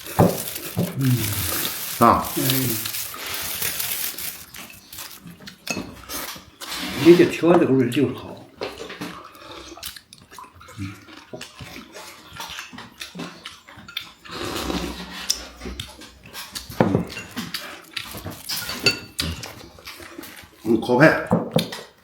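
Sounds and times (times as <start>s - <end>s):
people eating: 0.0s - 11.9s
tableware clattering: 18.5s - 19.4s
tableware clinking: 18.5s - 19.4s.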